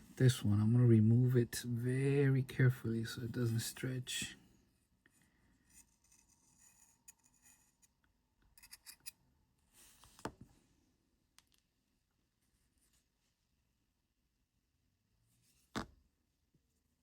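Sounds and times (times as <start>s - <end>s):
small tool scraping and clicking: 5.7s - 9.2s.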